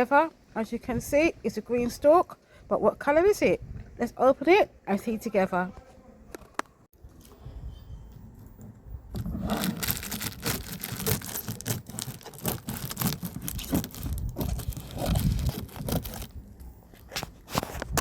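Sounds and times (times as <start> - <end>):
packaging ripping and crinkling: 9.2 - 16.4.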